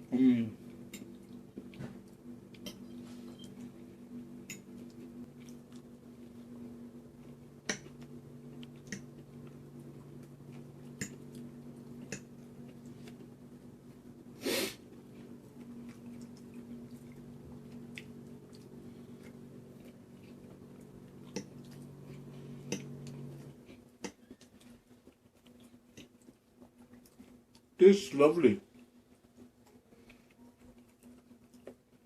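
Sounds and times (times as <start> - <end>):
steady low hum: 0.0 - 32.0
quiet chewing: 0.6 - 27.8, 28.6 - 32.0
loud sniff: 14.4 - 14.8.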